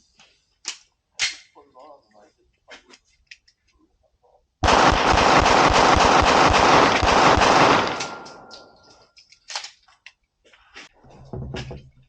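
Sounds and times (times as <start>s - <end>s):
rapid gunfire: 4.6s - 8.5s.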